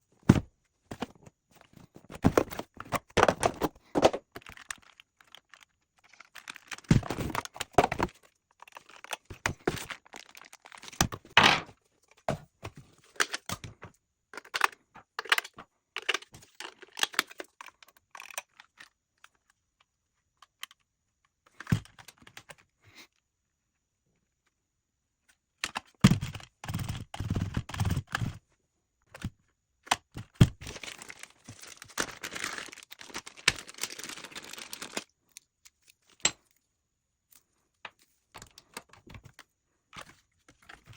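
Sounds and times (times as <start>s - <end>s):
packaging rustling: 2.0s - 11.3s, 30.6s - 35.1s.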